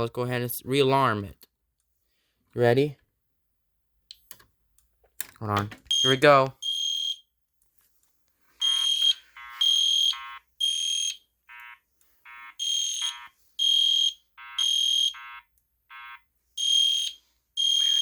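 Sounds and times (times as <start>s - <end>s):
lower-pitched pulsing alarm tone: 16.6s - 18.0s.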